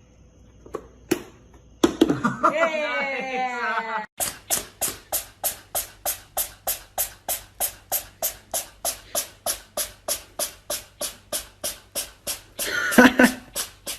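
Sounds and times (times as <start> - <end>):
rhythmic swishing strokes: 4.2 - 13.9.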